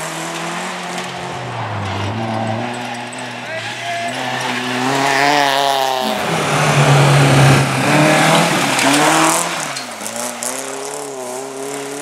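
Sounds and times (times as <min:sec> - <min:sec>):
rally car engine revving: 0:00.0 - 0:12.0.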